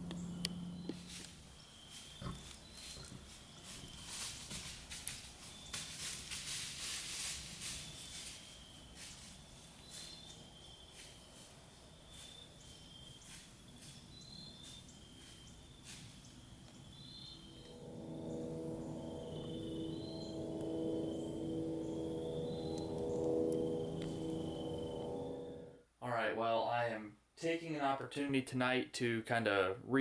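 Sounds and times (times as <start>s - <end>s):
crickets chirping: 0.0s - 6.1s, 7.3s - 25.8s
hissing rush of noise: 17.5s - 25.7s
soft music with gong-like tones: 17.5s - 25.8s.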